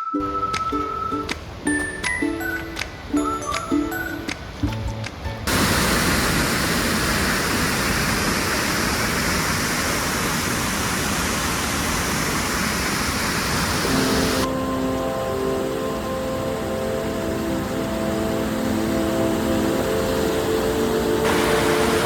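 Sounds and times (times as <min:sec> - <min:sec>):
music: 0:00.0 - 0:05.5, 0:13.9 - 0:22.0
waterfall rushing: 0:00.0 - 0:22.0.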